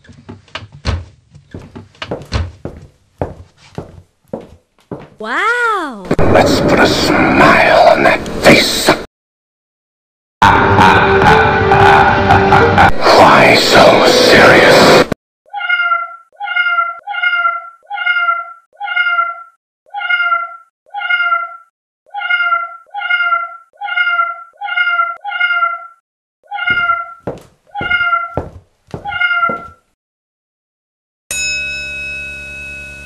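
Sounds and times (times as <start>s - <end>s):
cat meowing: 15.5s - 28.4s, 29.0s - 29.8s
sustained ringing tone: 31.3s - 33.0s.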